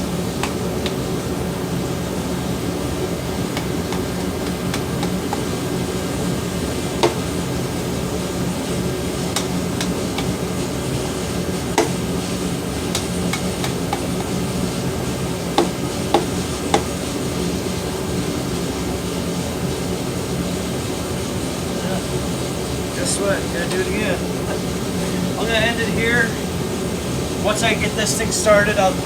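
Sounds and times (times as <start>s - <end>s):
fan hum: 0.0s - 29.0s
piston tapping into cylinder: 0.4s - 1.0s, 3.5s - 5.6s, 7.0s - 7.4s, 9.3s - 11.2s, 11.8s - 12.1s, 12.9s - 14.4s, 15.6s - 17.0s.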